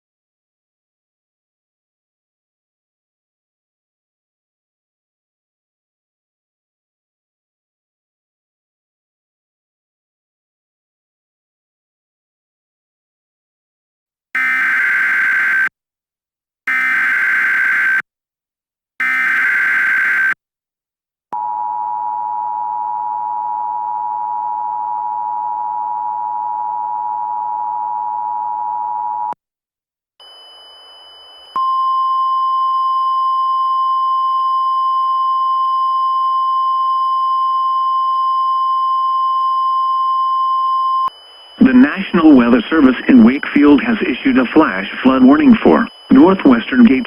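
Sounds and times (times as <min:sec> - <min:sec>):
raspy digital header bursts: 0:14.4 - 0:15.7, 0:16.7 - 0:18.0, 0:19.0 - 0:20.4
steady warning alarm tone: 0:14.4 - 0:15.7, 0:16.7 - 0:18.0, 0:19.0 - 0:20.4, 0:41.1 - 0:47.0
two-tone attention signal: 0:41.6 - 0:43.4
radio static hiss: 0:41.6 - 0:47.0.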